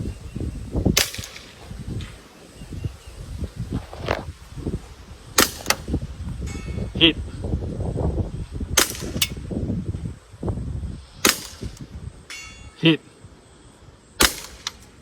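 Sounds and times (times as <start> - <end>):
airsoft gun pops: 5.4 - 6.0.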